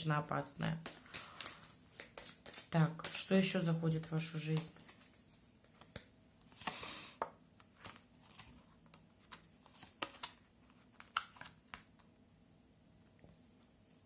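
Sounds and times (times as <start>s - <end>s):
cards clicking and tapping: 0.6s - 3.4s, 5.6s - 10.4s, 11.0s - 12.1s
cards sliding rustle: 0.8s - 3.4s, 4.5s - 12.1s.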